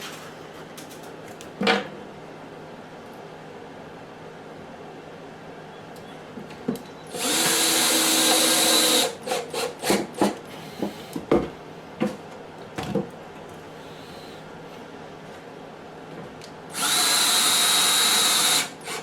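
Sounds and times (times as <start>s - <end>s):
drill-driver driving screw into wood: 7.1s - 10.4s, 16.7s - 19.0s.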